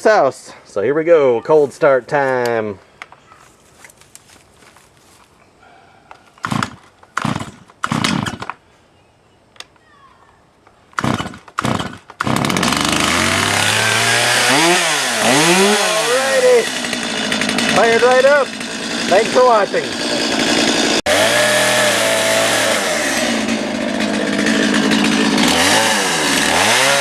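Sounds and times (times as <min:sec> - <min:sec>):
chainsaw engine running: 0:06.2 - 0:08.6, 0:11.0 - 0:27.0
chainsaw revving: 0:06.4 - 0:08.6, 0:11.0 - 0:27.0
pulls on starter cord: 0:06.4 - 0:08.6, 0:11.0 - 0:21.7.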